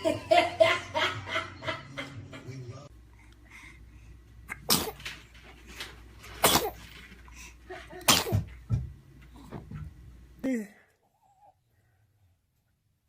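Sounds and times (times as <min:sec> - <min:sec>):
baby sneezing: 0:04.5 - 0:05.1, 0:06.4 - 0:06.9, 0:08.1 - 0:08.5.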